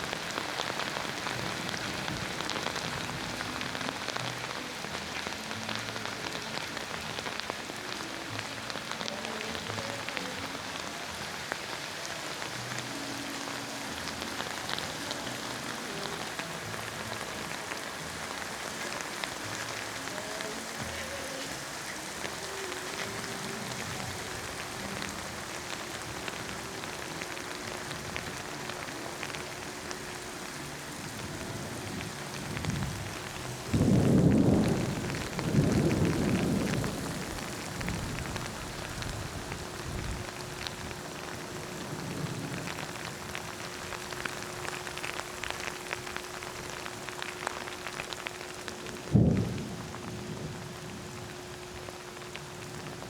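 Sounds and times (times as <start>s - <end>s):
steady rain falling: 0.0s - 53.0s
thunder rolling: 31.2s - 48.0s, 48.8s - 51.9s
sharp thunderclap: 32.5s - 38.5s, 49.1s - 50.7s.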